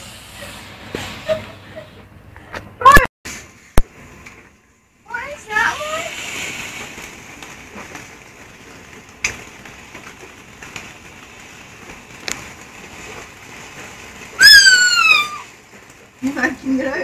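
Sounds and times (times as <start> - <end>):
faint hiss: 5.0 - 9.7
child's whistling squeal: 14.4 - 15.4.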